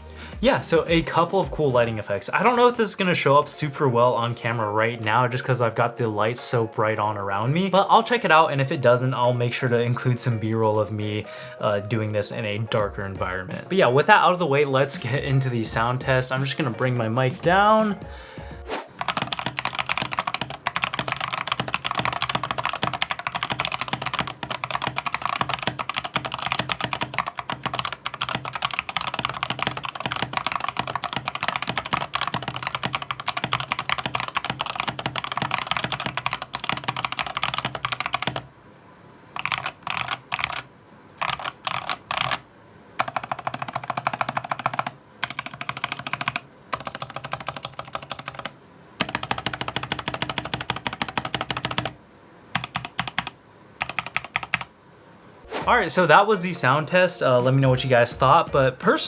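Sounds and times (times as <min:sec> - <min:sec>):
typing on mechanical keyboard: 0:18.9 - 0:38.5, 0:39.4 - 0:42.4, 0:43.0 - 0:52.0, 0:52.6 - 0:54.7.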